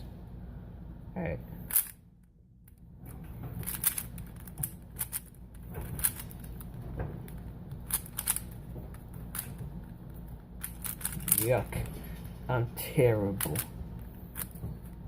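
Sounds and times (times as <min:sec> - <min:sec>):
puzzle cube plastic clicks: 0:03.6 - 0:11.8, 0:13.4 - 0:13.7, 0:14.3 - 0:14.6.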